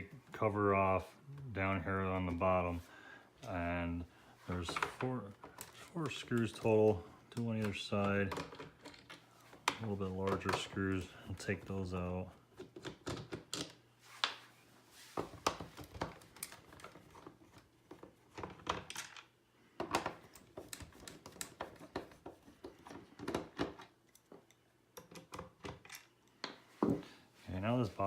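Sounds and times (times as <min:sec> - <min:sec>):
small clicks and taps of screws: 0:18.9 - 0:26.6.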